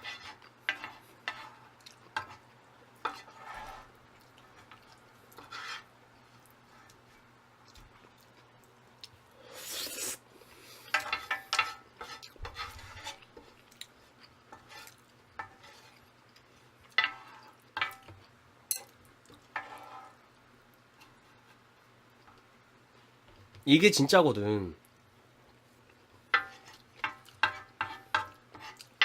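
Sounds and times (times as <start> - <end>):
spoon scraping a bowl: 0.0 - 1.6, 3.0 - 3.9, 5.4 - 5.9, 10.8 - 13.6, 14.5 - 16.0, 19.5 - 20.2, 26.3 - 29.0
person eating noisily: 9.4 - 10.9.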